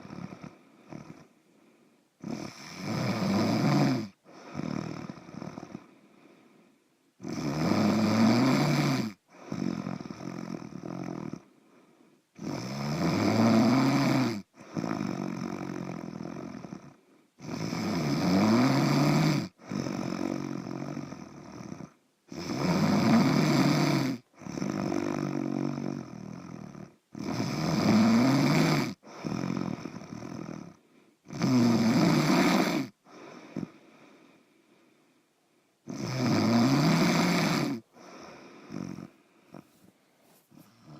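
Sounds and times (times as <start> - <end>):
person snoring: 0.0 - 1.4, 2.2 - 6.4, 7.2 - 34.5, 35.8 - 40.9
quiet out-breath: 0.5 - 2.1, 5.8 - 7.0, 11.4 - 12.3, 33.0 - 35.8, 37.9 - 40.9.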